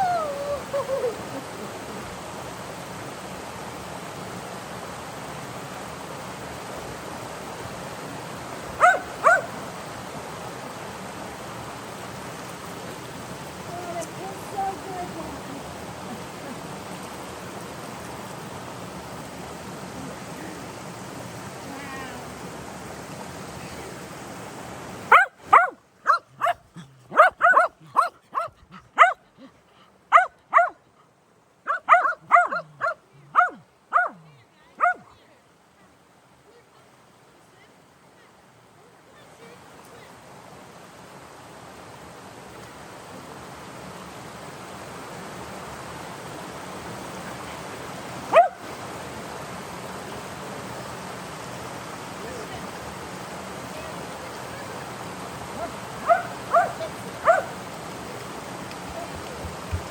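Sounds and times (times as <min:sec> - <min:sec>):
creek water rushing: 0:00.0 - 0:59.9
dog barking: 0:08.8 - 0:09.6, 0:25.1 - 0:29.3, 0:30.1 - 0:30.8, 0:31.7 - 0:34.2, 0:34.8 - 0:35.2, 0:48.3 - 0:48.6, 0:55.6 - 0:57.6.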